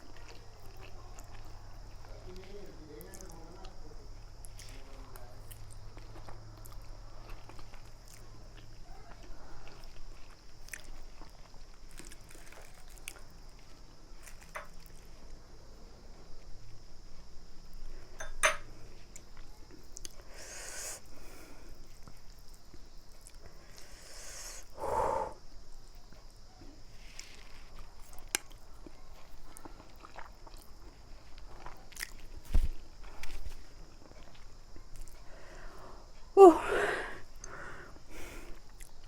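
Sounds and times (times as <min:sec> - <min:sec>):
low room hum: 0:00.0 - 0:39.0
person chewing noodles: 0:05.5 - 0:15.2, 0:18.9 - 0:21.2, 0:27.2 - 0:37.6, 0:38.2 - 0:39.0.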